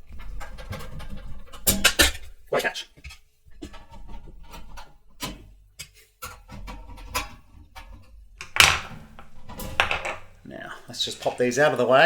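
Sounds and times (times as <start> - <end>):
metal clatter: 0.0 - 2.4, 6.2 - 10.4.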